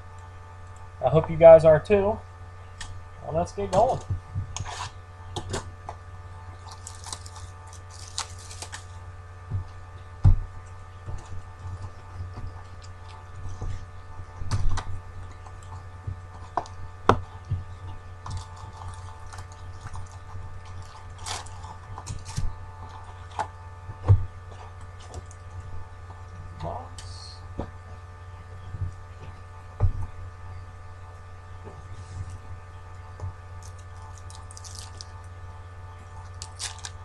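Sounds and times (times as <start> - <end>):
faint constant tones: 0.0 - 37.0
low electrical hum: 0.0 - 37.0.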